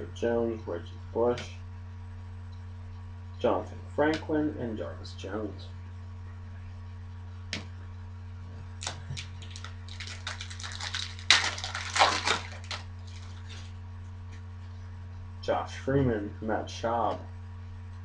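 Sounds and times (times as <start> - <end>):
low electrical hum: 0.0 - 18.0
card wrapper crinkling: 8.8 - 13.7.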